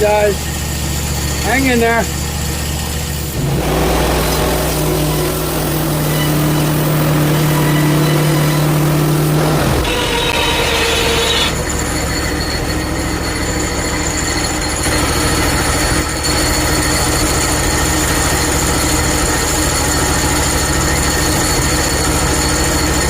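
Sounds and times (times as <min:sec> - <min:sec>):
bandsaw blade whine: 0:00.0 - 0:23.0
engine hum: 0:00.0 - 0:23.0.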